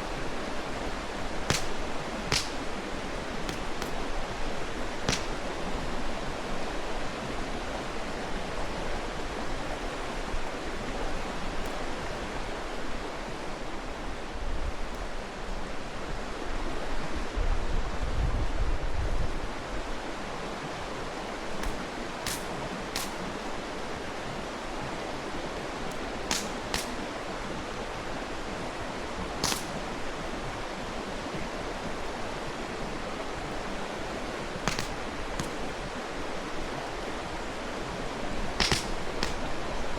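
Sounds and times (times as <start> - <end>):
mountain stream rushing: 0.0 - 39.9
campfire pops and crackles: 0.7 - 6.4, 21.6 - 23.7, 25.9 - 27.3, 29.4 - 30.0, 34.5 - 36.1, 37.8 - 39.8.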